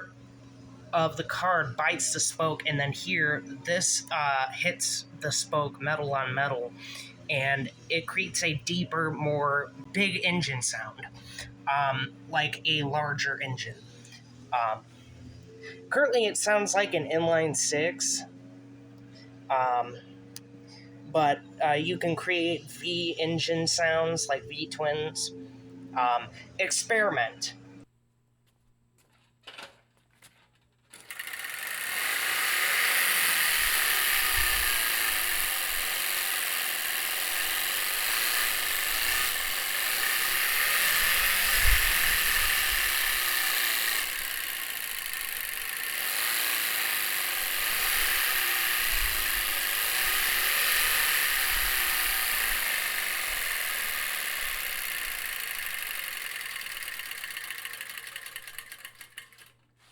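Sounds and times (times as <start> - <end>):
cards flapping against bicycle spokes: 28.4 - 59.9.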